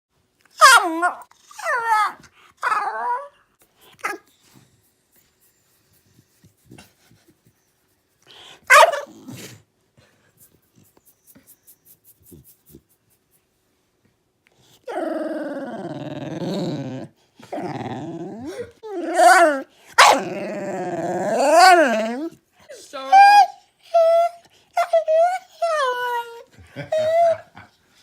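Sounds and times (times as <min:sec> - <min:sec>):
puppy yelping and calling: 0:19.0 - 0:20.3.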